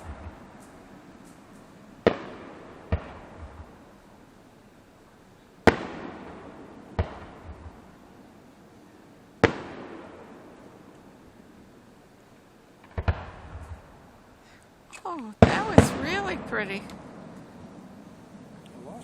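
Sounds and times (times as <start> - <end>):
small firework pops: 0.0 - 4.0, 5.6 - 8.0, 9.4 - 11.1, 12.8 - 14.0, 14.6 - 17.6
fireworks shells bursting: 0.0 - 4.3, 12.8 - 18.3
echoing rumble: 0.0 - 12.2, 15.4 - 18.7.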